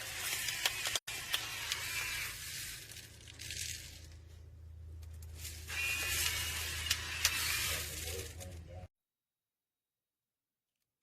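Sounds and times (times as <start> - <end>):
grinder motor whining: 0.0 - 2.9, 5.6 - 8.4.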